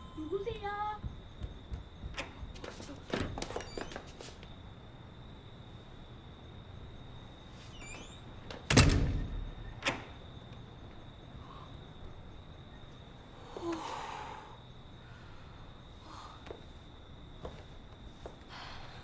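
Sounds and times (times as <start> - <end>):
door thunk: 1.0 - 3.6, 8.5 - 10.2
door latch click: 8.5 - 10.2.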